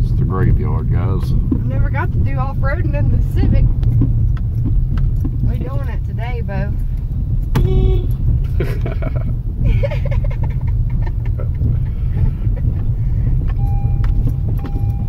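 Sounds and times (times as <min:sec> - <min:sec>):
car rumbling over rough ground: 0:00.0 - 0:15.0
sharp knocks over bumps: 0:00.3 - 0:15.0.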